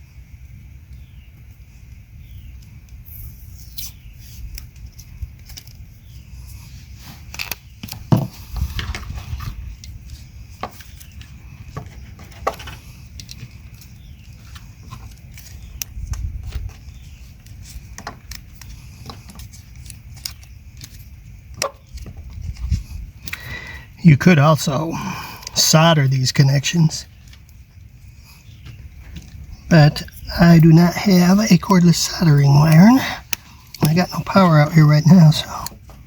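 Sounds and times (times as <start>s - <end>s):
clicks and rustles of wiring: 2.5s - 23.5s, 27.1s - 30.3s, 32.5s - 34.1s
electrical tape wrapping: 7.0s - 23.4s.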